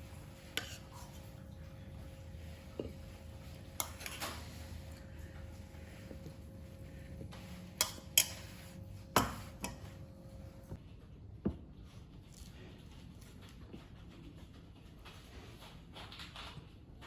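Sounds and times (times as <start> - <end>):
faint steady hum: 0.0 - 11.6.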